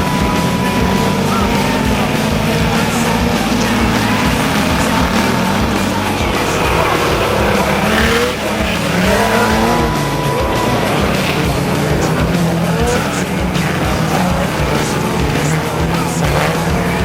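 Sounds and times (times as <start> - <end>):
race car engines revving: 0.0 - 17.0.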